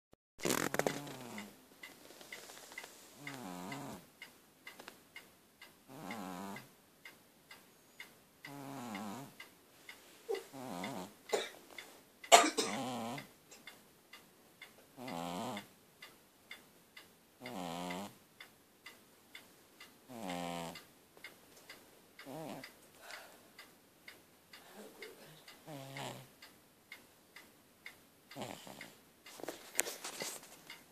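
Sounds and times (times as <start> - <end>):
faint ticking: 0.4 - 30.9
cat snoring: 0.5 - 1.6, 2.4 - 4.0, 5.9 - 6.7, 8.5 - 9.4, 10.3 - 11.2, 12.7 - 13.3, 15.0 - 15.7, 17.4 - 18.2, 20.1 - 20.8, 22.2 - 22.7, 25.6 - 26.3, 28.4 - 29.0.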